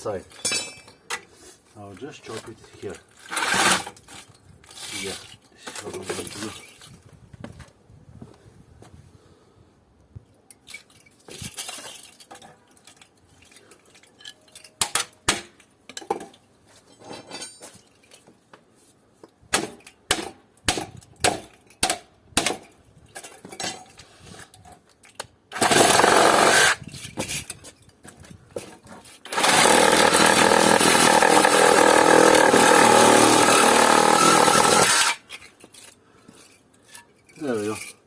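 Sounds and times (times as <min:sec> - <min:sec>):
metal strikes and clanks: 0:00.3 - 0:01.1
power saw running: 0:25.6 - 0:26.8, 0:29.3 - 0:35.2.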